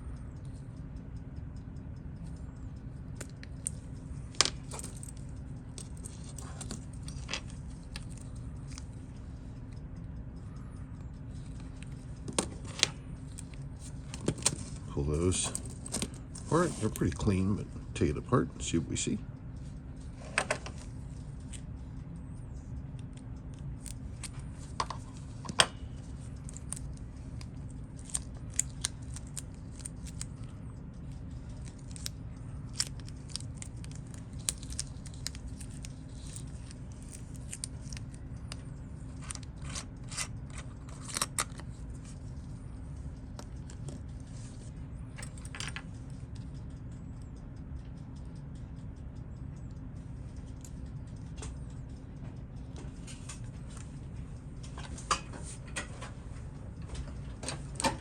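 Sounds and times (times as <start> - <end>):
low background hum: 0.0 - 58.0
small metal clicks of watch tools: 0.3 - 16.2, 20.7 - 58.0.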